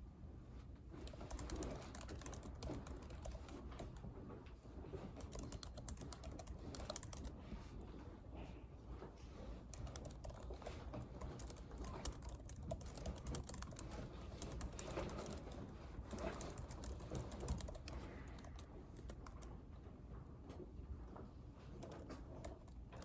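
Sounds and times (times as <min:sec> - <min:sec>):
low background hum: 0:00.0 - 0:23.0
computer keyboard typing: 0:01.0 - 0:04.1, 0:05.2 - 0:07.4, 0:09.7 - 0:19.6, 0:21.7 - 0:23.0.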